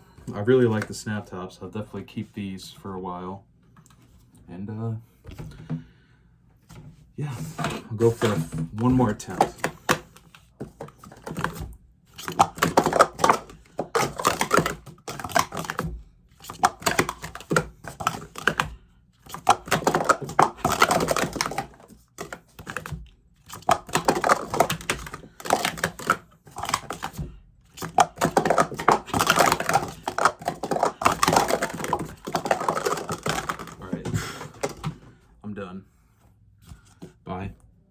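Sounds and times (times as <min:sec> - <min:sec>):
plastic cups clattering: 0:07.2 - 0:35.2.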